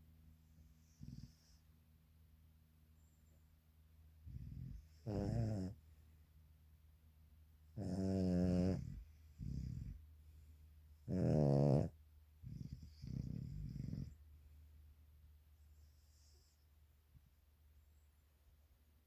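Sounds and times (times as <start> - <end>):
man snoring: 4.3 - 5.8, 7.8 - 10.0, 11.1 - 11.9.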